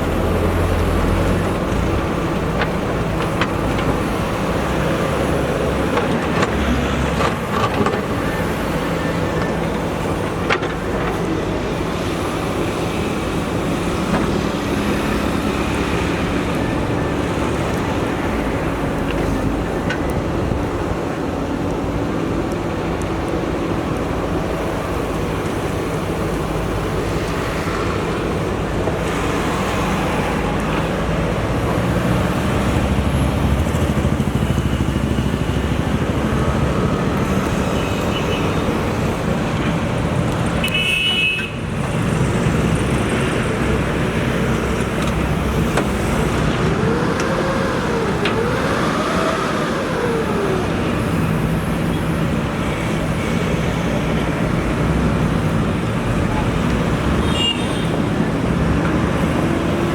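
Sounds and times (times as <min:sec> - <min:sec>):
diesel engine running: 0:00.0 - 0:40.7, 0:41.6 - 0:59.9.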